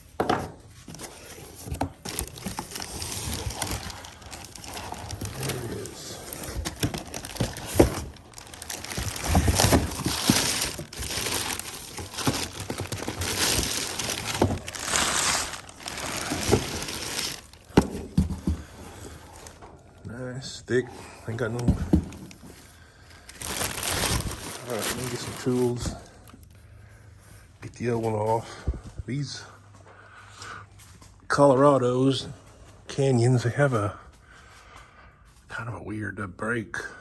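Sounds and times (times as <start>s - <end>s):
wrapping crinkling and tearing: 1.0s - 17.8s, 23.1s - 26.5s.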